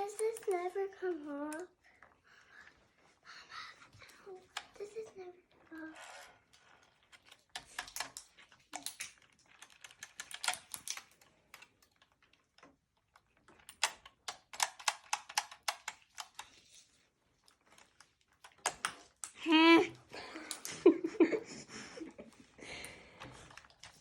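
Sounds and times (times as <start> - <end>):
rotary telephone dial clicking: 0.0 - 1.8, 5.9 - 12.2, 13.5 - 16.6.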